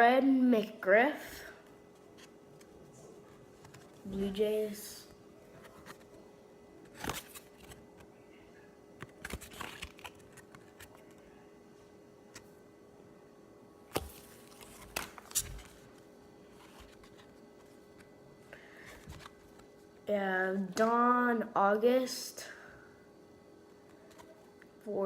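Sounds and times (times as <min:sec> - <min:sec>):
faint steady hum: 0:00.0 - 0:25.0
cards rustling and tapping: 0:09.0 - 0:11.2, 0:13.9 - 0:18.1.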